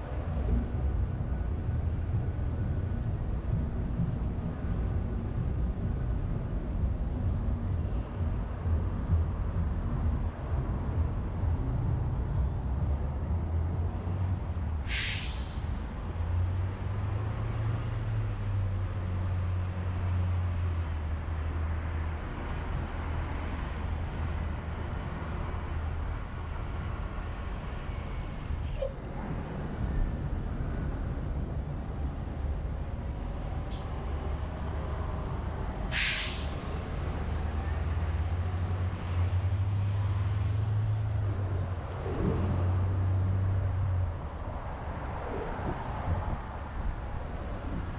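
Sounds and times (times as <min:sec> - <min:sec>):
heavy vehicle engines rumbling: 0:00.0 - 0:47.9
sharp air hiss: 0:14.8 - 0:15.8, 0:35.9 - 0:36.8.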